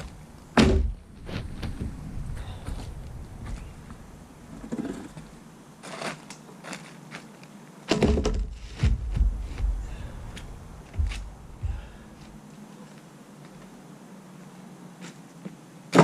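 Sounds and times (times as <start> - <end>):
heavy thumps: 0.0 - 2.0, 7.9 - 12.4
knocks and clatter: 7.9 - 9.9, 10.9 - 11.8.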